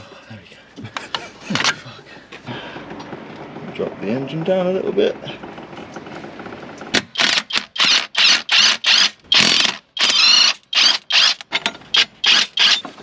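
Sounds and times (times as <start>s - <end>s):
ratchet wrench clicking: 7.2s - 11.5s.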